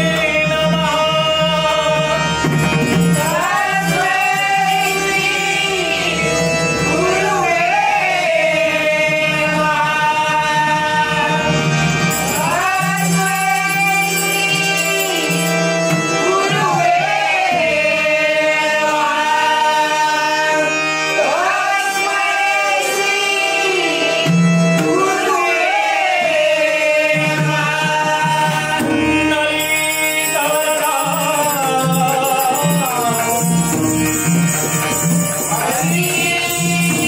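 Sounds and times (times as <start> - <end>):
tabla drumming: 0.0 - 5.6, 27.2 - 37.0
person singing: 0.0 - 24.2, 24.8 - 37.0
instrumental drone: 0.1 - 8.8, 11.2 - 16.6, 29.5 - 37.0.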